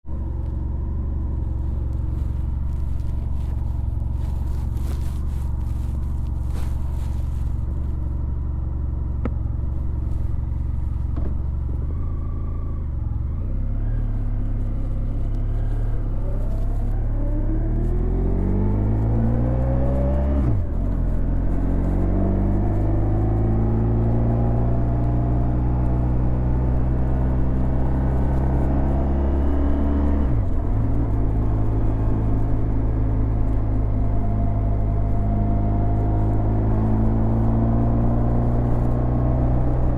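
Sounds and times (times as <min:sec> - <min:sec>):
gear change: 0:00.1 - 0:39.9
motorcycle engine accelerating: 0:00.1 - 0:39.9.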